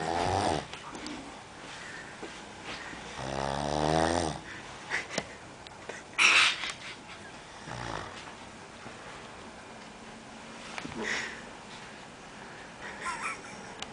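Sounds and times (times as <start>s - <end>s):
man snoring: 0.0s - 0.7s, 3.2s - 4.5s, 7.6s - 8.2s.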